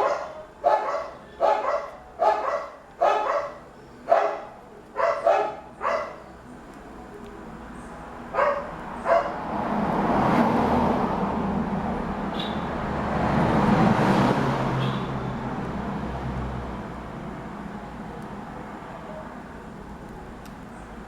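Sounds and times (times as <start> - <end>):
dog barking: 0.0 - 6.3, 8.3 - 9.4
vehicle passing: 8.3 - 17.9.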